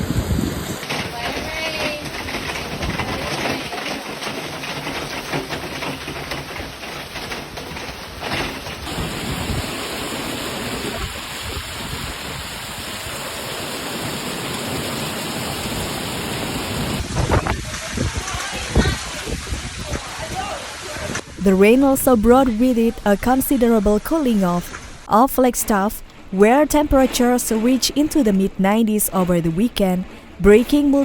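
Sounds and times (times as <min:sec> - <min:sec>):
heavy pouring rain: 0:00.0 - 0:23.0.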